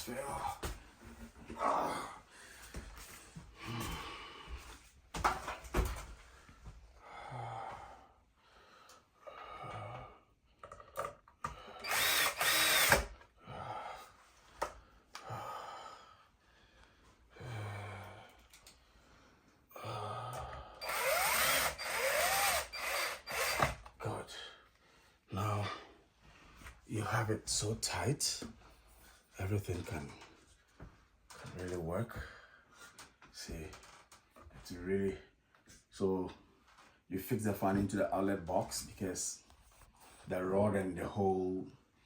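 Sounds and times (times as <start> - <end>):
power drill driving screws: 11.8 - 13.2, 20.8 - 24.0.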